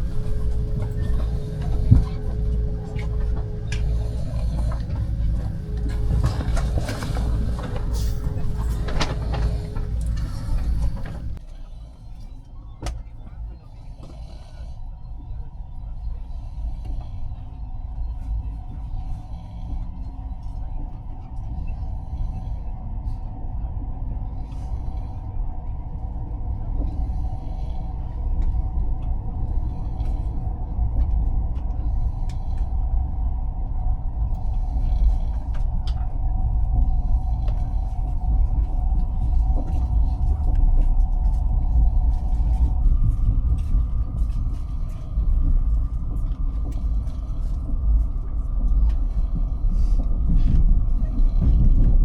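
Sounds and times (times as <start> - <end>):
creaks and rattles: 0.0 - 11.4
train rumble: 0.0 - 52.0.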